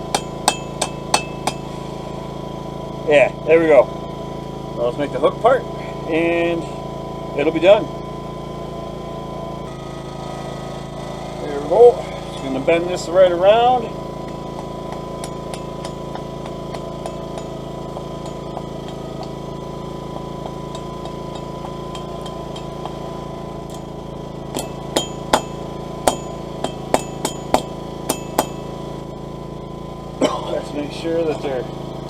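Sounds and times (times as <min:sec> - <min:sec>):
hammer striking steel on anvil: 0:00.0 - 0:01.8, 0:14.2 - 0:23.1, 0:23.7 - 0:28.8
steady drone: 0:00.0 - 0:32.0.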